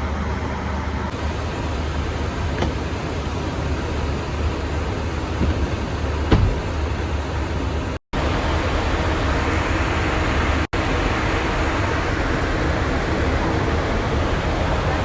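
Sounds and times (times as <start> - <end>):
airliner cabin noise: 1.1 - 8.0.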